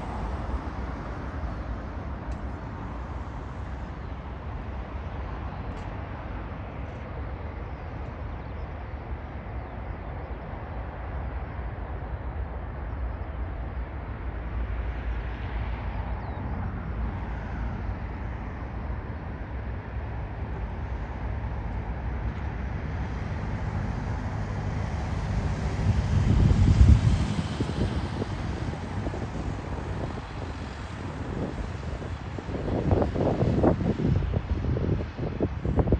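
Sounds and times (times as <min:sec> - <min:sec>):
jet airliner engine noise: 0:00.0 - 0:35.9
wind buffeting microphone: 0:15.9 - 0:35.9.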